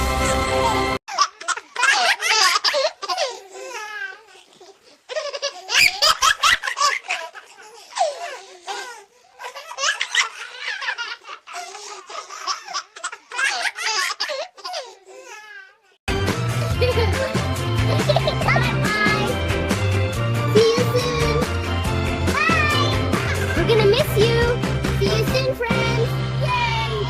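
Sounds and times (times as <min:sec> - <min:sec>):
baby laughing and giggling: 0:00.6 - 0:15.8, 0:16.7 - 0:19.3, 0:22.4 - 0:24.4.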